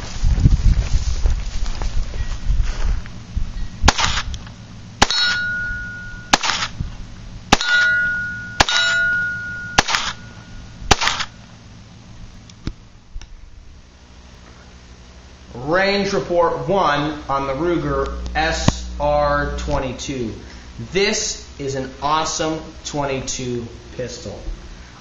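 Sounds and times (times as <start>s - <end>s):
wind rumble on microphone: 0.0s - 4.7s, 5.4s - 8.4s
pistol shots: 3.9s - 4.4s, 5.0s - 5.5s, 6.3s - 6.8s, 7.5s - 8.0s, 8.6s - 9.2s, 9.8s - 10.3s, 10.9s - 11.4s
steel plate target ding: 5.0s - 6.6s, 7.5s - 10.7s.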